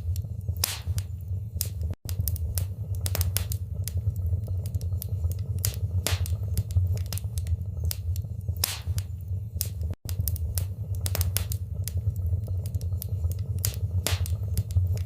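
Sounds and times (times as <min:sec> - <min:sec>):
low rumble of flames: 0:00.0 - 0:15.0
wood fire crackling: 0:00.0 - 0:15.0.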